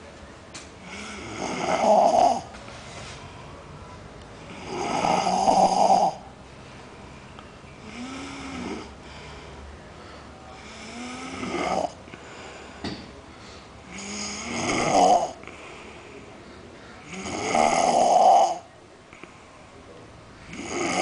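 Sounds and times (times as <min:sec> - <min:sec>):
person snoring: 0:00.8 - 0:02.5, 0:04.4 - 0:06.3, 0:07.8 - 0:09.2, 0:10.6 - 0:12.0, 0:13.9 - 0:15.5, 0:17.0 - 0:18.7, 0:20.5 - 0:21.0.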